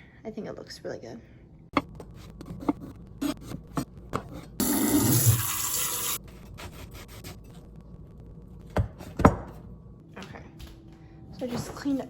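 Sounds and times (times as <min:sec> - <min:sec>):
water running from a tap: 0:04.6 - 0:06.2.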